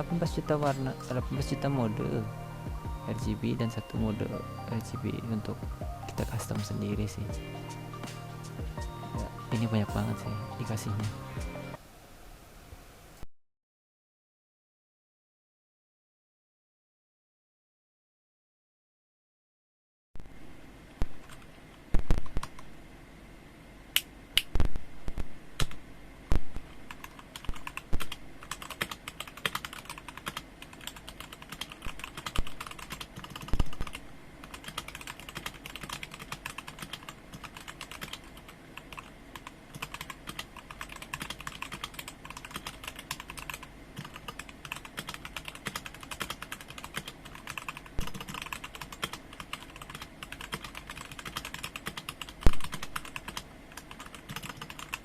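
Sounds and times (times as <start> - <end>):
typing on mechanical keyboard: 26.9 - 55.0.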